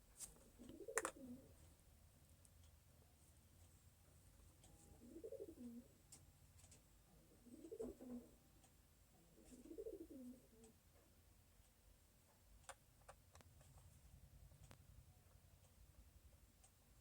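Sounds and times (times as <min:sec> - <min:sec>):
faint dove cooing: 0:00.4 - 0:01.6, 0:04.8 - 0:06.0, 0:07.1 - 0:08.5, 0:09.2 - 0:10.8.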